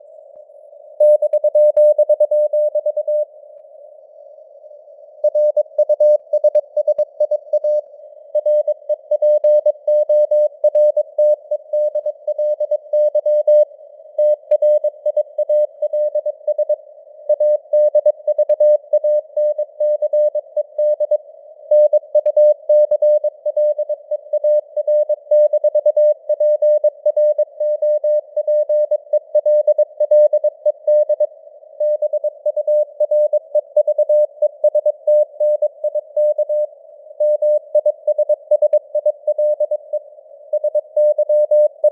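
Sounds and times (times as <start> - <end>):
faint radio hiss: 39.7 - 40.5.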